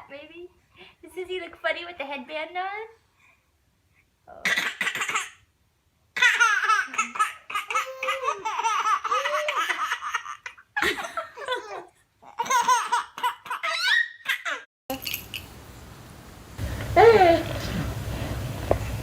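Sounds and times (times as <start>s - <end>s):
baby laughing: 6.2s - 14.7s.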